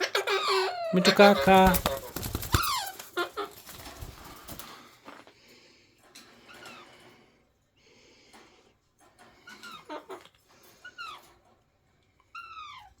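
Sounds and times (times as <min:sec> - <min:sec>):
parakeet raspy chatter: 0:00.0 - 0:04.6.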